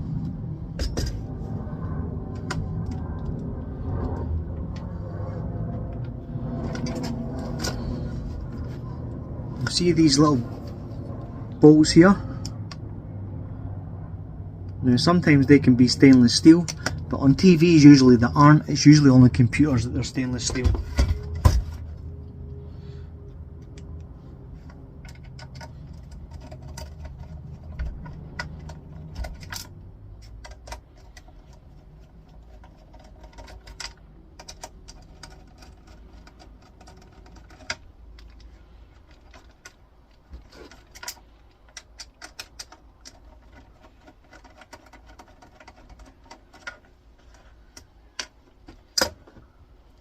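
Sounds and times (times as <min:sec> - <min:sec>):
low rumble: 0:00.0 - 0:17.6
metallic clicks of tools and bolts: 0:23.6 - 0:49.4.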